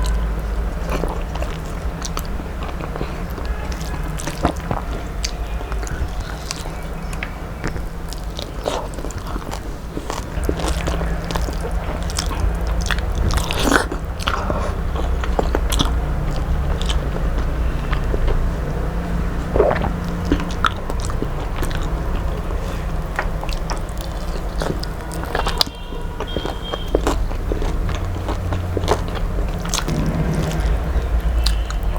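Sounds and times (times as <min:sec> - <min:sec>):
person chewing crunchy food: 0:00.0 - 0:31.9
wet mouth sounds: 0:00.0 - 0:31.9
low hum: 0:26.7 - 0:31.9.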